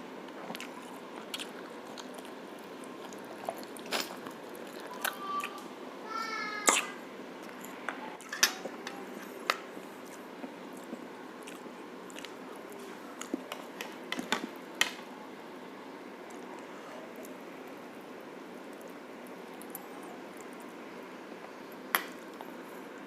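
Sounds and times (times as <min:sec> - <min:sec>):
chewing and biting meat: 0:00.5 - 0:05.2.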